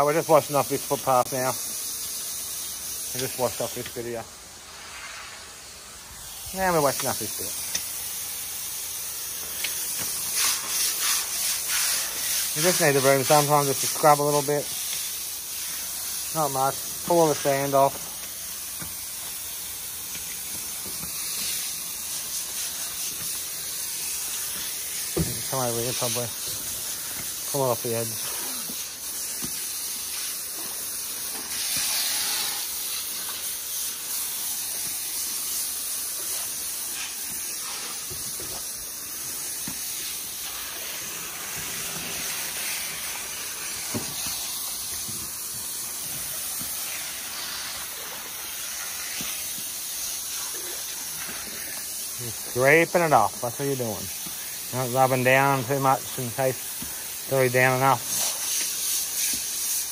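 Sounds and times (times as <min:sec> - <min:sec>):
hose spraying water on concrete: 0:00.0 - 0:59.9.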